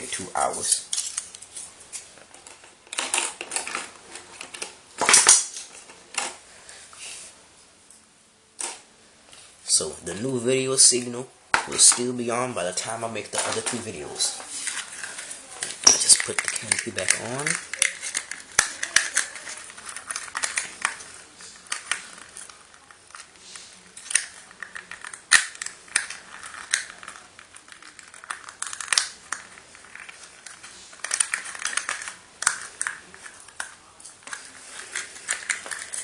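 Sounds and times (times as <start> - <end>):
plastic parts clicking: 2.2 - 6.4, 14.7 - 36.0
packaging rustling and crinkling: 13.4 - 36.0.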